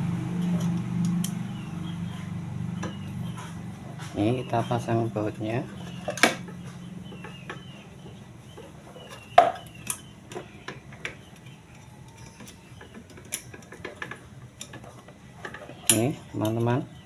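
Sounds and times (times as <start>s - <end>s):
metal clicks of bolt and tools: 9.1s - 16.8s.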